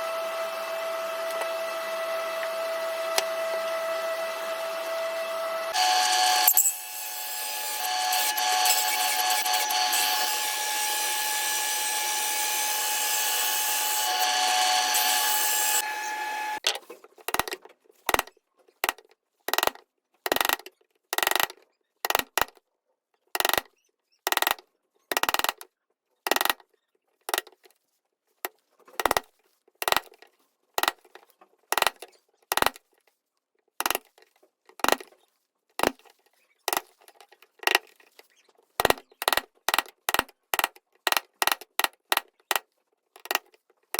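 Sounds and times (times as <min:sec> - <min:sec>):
power tool on wood: 0:00.0 - 0:16.6.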